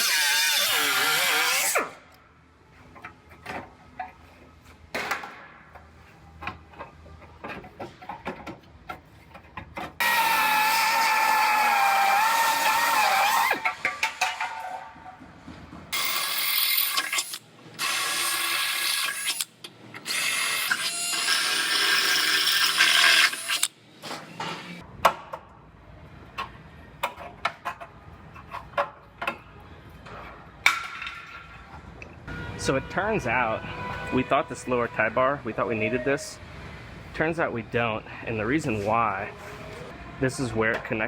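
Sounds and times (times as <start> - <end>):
power tool cutting sheet metal: 0.0 - 1.9, 10.0 - 13.8, 16.0 - 23.8.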